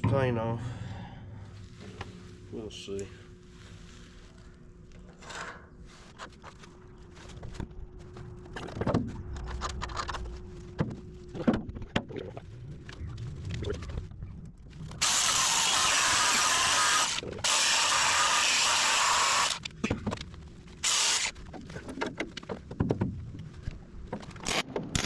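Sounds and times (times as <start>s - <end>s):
die grinder grinding steel: 15.0s - 19.6s, 20.8s - 21.3s.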